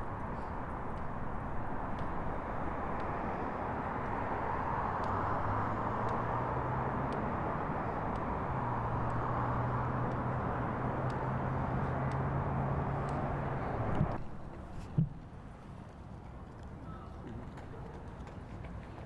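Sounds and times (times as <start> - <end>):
heavy machinery engine humming: 0.0 - 14.2.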